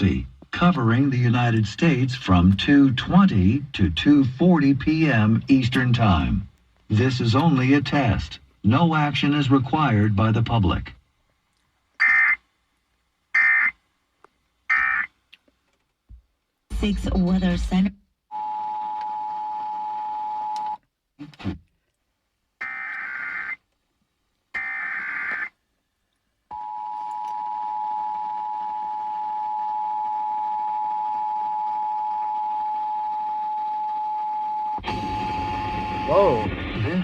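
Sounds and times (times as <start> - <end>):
person speaking announcement: 0.0 - 11.0, 36.1 - 37.0
buzzy data tones: 14.7 - 15.1, 24.6 - 25.5
two-tone attention signal: 34.8 - 36.5.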